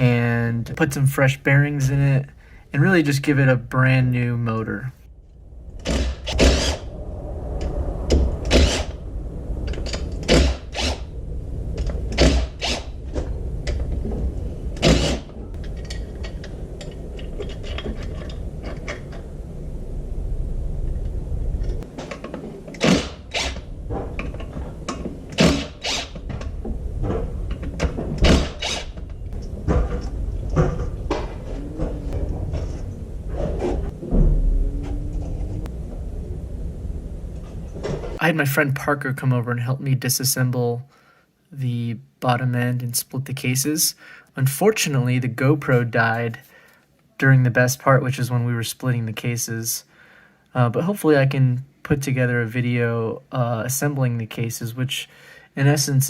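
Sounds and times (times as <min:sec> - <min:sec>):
low background rumble: 0:00.0 - 0:38.8.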